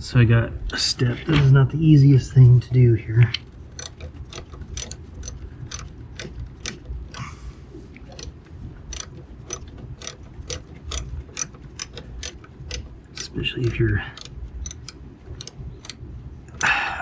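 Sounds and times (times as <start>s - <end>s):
ratchet wrench clicking: 3.7s - 7.2s, 8.0s - 16.0s.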